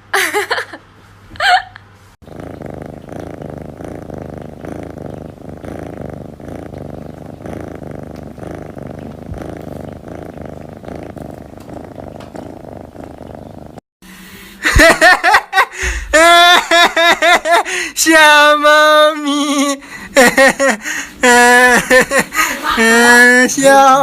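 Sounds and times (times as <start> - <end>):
cat purring: 2.2 - 13.8.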